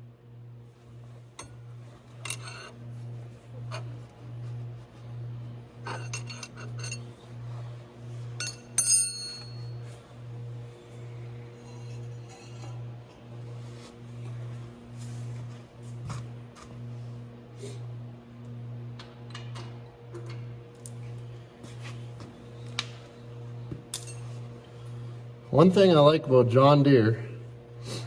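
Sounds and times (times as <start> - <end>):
tools clinking on metal: 2.2 - 2.7, 5.9 - 7.0, 8.4 - 9.8, 24.0 - 24.3.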